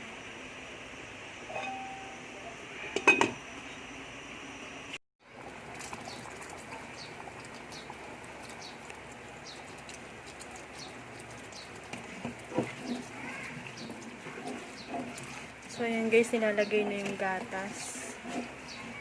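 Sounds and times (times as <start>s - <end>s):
pot boiling hiss: 0.0s - 19.0s
metal utensil clinking on pot: 1.5s - 2.2s.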